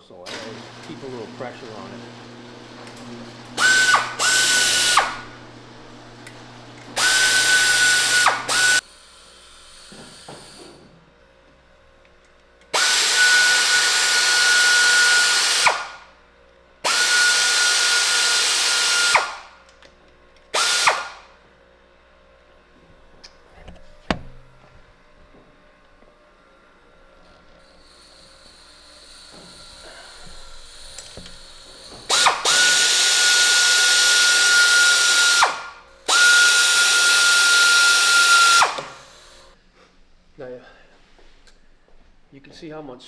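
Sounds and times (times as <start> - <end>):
power tool motor whine: 0.3 - 10.8, 12.7 - 16.1, 16.8 - 19.6, 20.5 - 21.3, 27.1 - 39.6.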